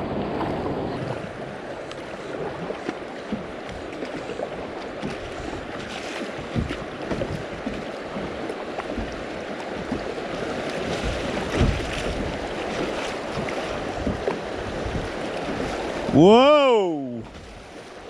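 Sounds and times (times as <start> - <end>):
river water rushing: 0.0 - 18.0.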